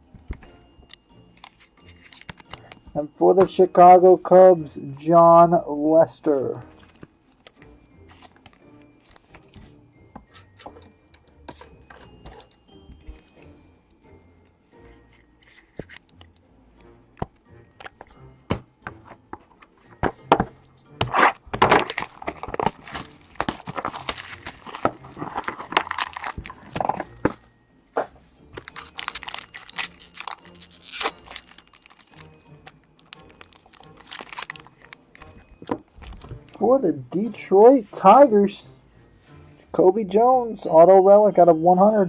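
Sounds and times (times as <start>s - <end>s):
background music: 0.0s - 42.0s
card packaging tearing and crinkling: 21.0s - 27.4s, 28.6s - 35.4s.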